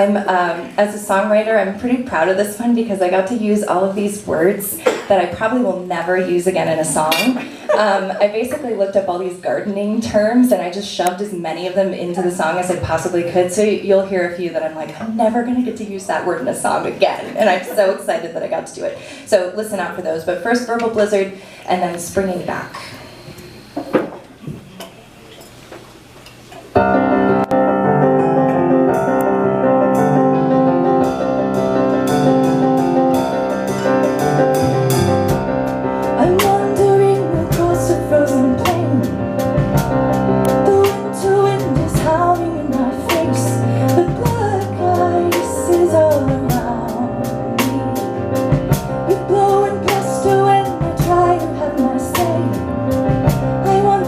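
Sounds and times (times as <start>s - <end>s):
rhythmic instrumental accompaniment: 26.7s - 54.0s
person singing: 36.2s - 39.2s.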